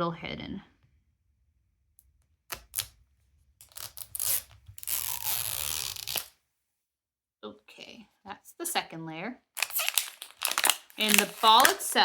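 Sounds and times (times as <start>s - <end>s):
plastic strip ripping: 2.5s - 2.9s, 3.6s - 6.3s, 9.6s - 12.0s
handling rustle: 9.6s - 12.0s
plastic clicks: 9.6s - 12.0s.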